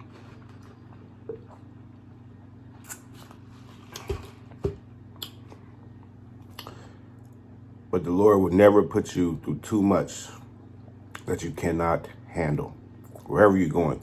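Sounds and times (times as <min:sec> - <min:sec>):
steady low hum: 0:00.0 - 0:14.0
wet mouth clicks and smacks: 0:02.8 - 0:03.3, 0:05.2 - 0:05.4, 0:06.5 - 0:07.3.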